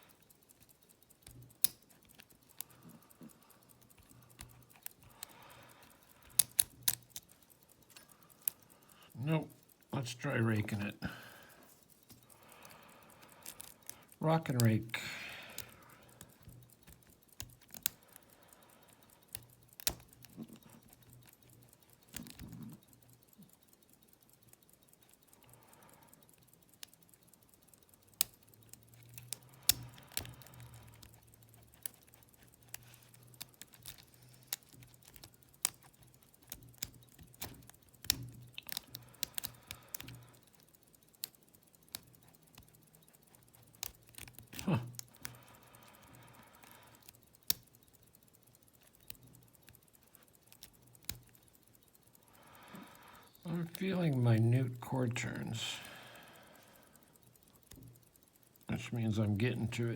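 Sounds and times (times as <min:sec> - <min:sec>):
lock pick clicking and scraping: 0:00.0 - 0:08.8, 0:12.0 - 0:14.8, 0:15.5 - 0:23.7, 0:28.2 - 0:47.6, 0:48.8 - 0:52.0.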